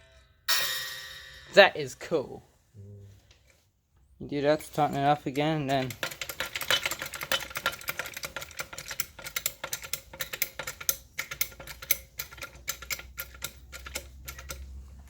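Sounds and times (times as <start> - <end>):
ratchet pawl clicking: 5.7 - 14.8.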